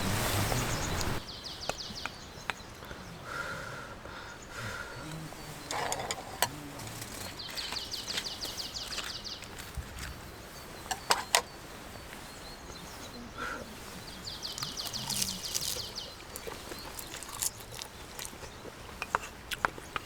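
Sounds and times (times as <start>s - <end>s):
loud steady hiss: 0.0s - 1.6s
birds singing trills: 0.0s - 20.0s.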